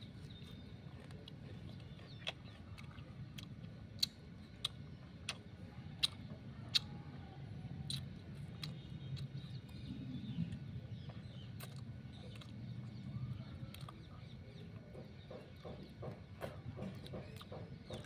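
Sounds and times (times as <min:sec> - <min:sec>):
sugarcane being chewed and crunched: 0:00.0 - 0:07.1, 0:07.7 - 0:14.3
low steady rumble: 0:00.0 - 0:15.0.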